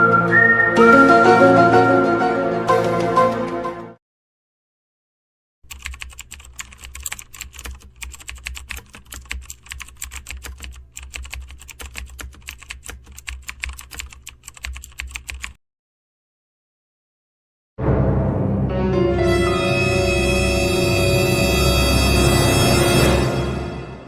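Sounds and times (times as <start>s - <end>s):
keyboard typing clicks: 5.7s - 15.6s.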